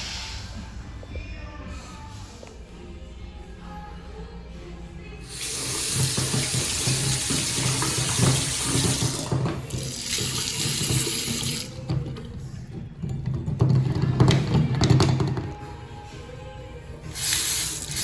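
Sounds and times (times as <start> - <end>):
water running from a tap: 5.3 - 12.0, 17.2 - 18.0.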